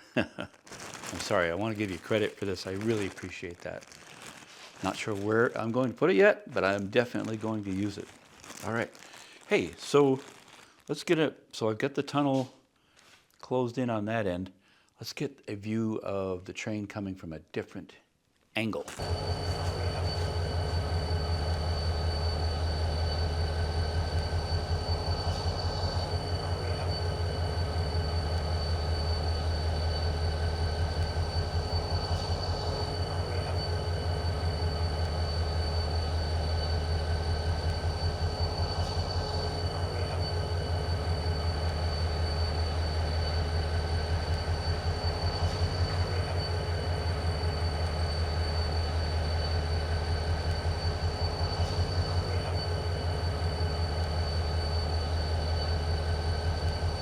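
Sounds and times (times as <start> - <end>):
steady high whine: 1.0 - 4.1, 4.7 - 10.0, 18.9 - 57.0
model locomotive diesel engine throb: 1.2 - 3.3, 4.9 - 8.0, 19.0 - 57.0.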